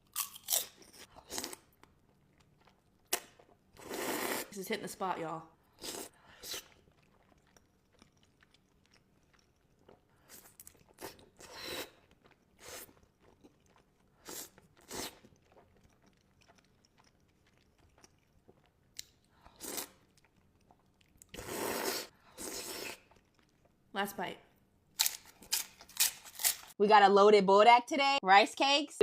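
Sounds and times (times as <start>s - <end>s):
person chewing noodles: 0.0s - 4.5s, 5.6s - 23.9s.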